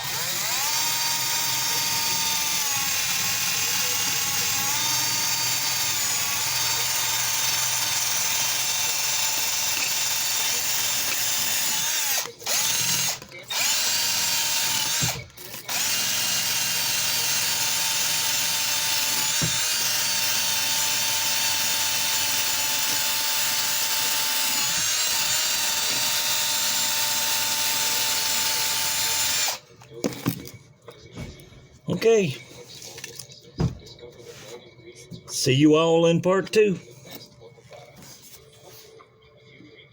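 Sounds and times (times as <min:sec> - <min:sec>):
electric drill with wire wheel whining: 0:00.0 - 0:29.6.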